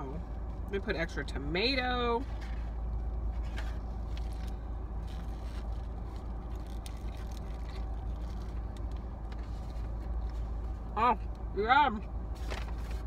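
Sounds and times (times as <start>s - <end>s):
vehicle motor rumble: 0.0s - 13.0s
burger wrapper being handled: 2.3s - 10.8s.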